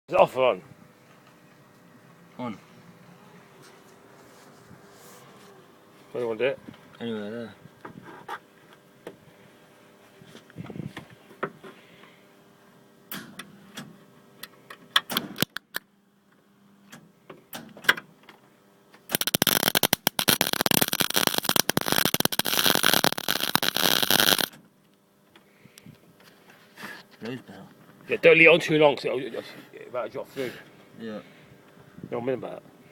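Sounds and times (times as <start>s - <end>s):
welding arc crackling and spitting: 19.1s - 24.5s.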